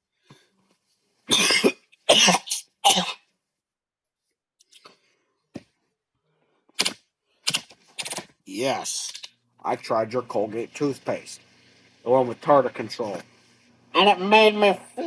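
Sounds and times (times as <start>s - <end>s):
person coughing: 1.3s - 3.3s.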